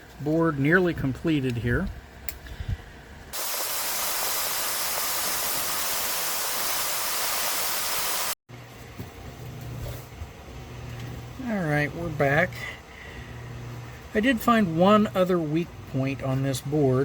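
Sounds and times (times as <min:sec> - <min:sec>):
steady hiss: 0:03.4 - 0:08.4
low steady hum: 0:08.5 - 0:17.0.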